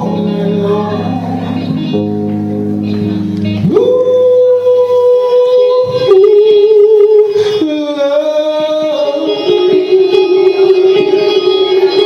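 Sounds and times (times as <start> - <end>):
live band accompaniment: 0.0 - 12.0
singer holding long note: 3.7 - 12.0.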